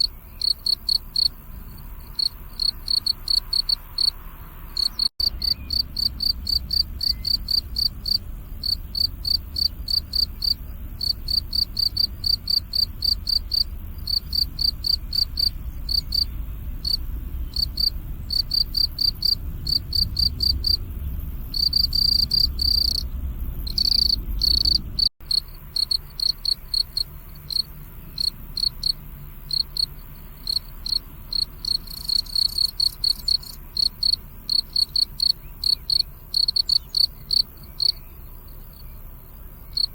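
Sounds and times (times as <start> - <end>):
crickets chirping: 0.0 - 39.9
low rumble: 0.1 - 34.5.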